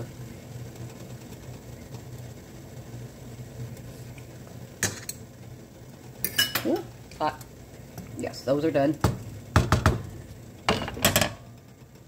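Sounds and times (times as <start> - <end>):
low machine hum: 0.0 - 12.0
utensil knocking on pot: 9.0 - 10.1.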